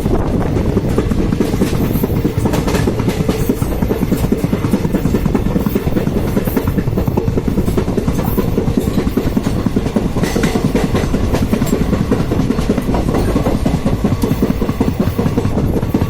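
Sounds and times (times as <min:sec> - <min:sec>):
train rumbling over bridge: 0:00.0 - 0:16.0
train wheels clattering: 0:00.0 - 0:16.0.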